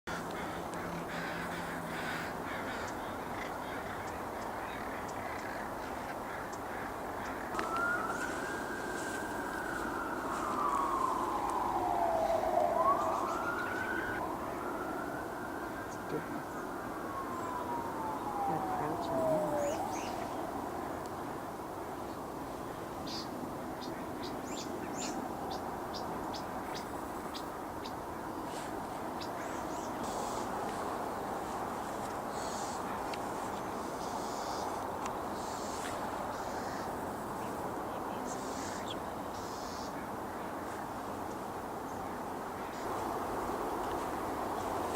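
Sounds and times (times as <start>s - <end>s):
harsh bird calls: 0.1s - 14.2s, 17.4s - 20.5s
steady background noise: 0.1s - 44.9s
siren wailing: 7.5s - 20.8s.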